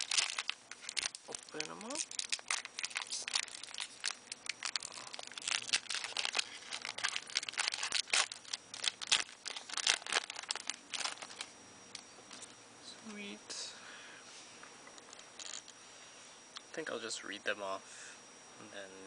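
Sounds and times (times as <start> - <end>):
foil wrapper tearing and crinkling: 0.0 - 11.5, 15.3 - 15.6.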